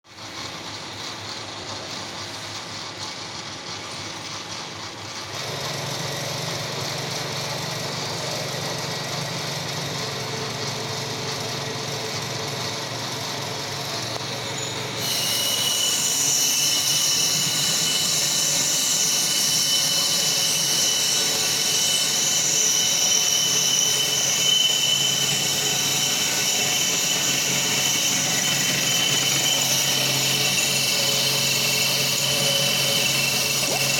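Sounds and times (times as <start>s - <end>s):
metal lathe drone: 5.4s - 33.9s
high-pitched whine and hiss: 10.1s - 33.9s.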